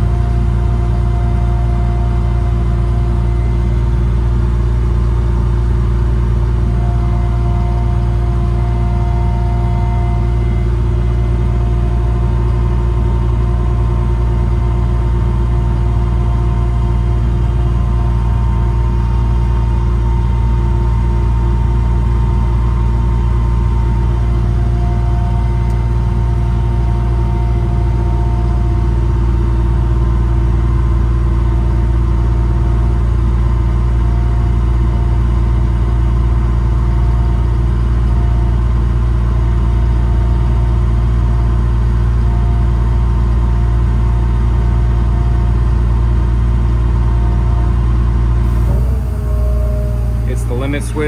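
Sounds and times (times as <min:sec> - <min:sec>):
air compressor drone: 0:00.0 - 0:30.2, 0:46.9 - 0:51.0
diesel engine running: 0:00.0 - 0:51.0.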